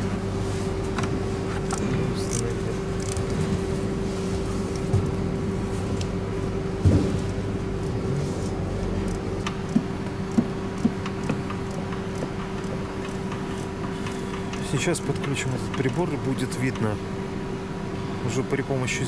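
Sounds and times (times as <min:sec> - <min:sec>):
steady mechanical hum: 0:00.0 - 0:19.0
light clicks and knocks: 0:09.4 - 0:16.9.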